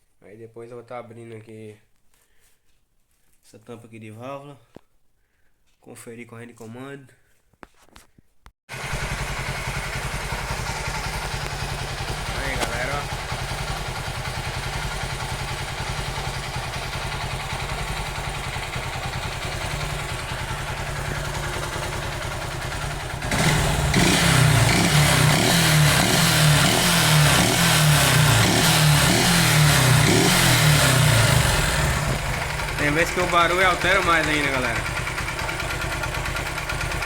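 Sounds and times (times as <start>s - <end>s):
motorcycle engine running roughly: 8.7s - 37.0s.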